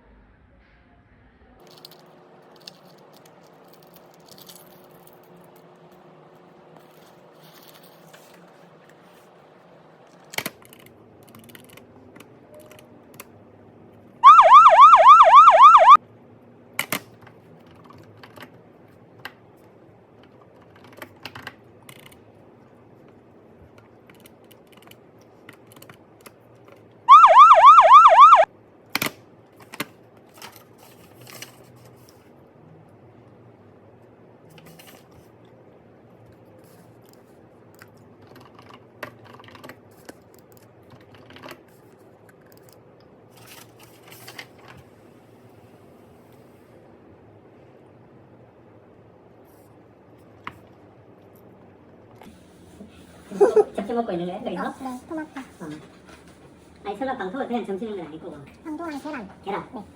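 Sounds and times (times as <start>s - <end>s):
electronic warbling siren tone: 14.2s - 16.0s, 27.1s - 28.5s.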